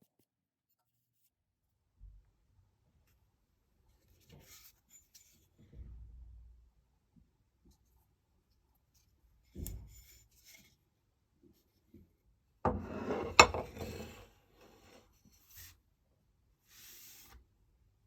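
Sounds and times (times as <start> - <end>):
scraping on wood: 12.7 - 15.1.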